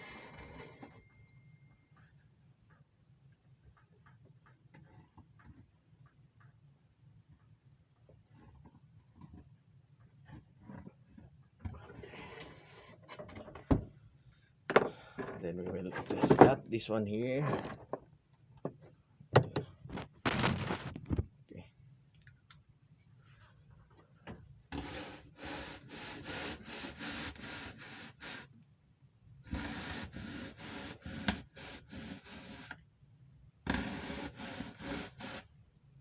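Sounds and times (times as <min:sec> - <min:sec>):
hand saw rasping: 0:24.8 - 0:28.5, 0:29.5 - 0:32.8, 0:33.7 - 0:35.4.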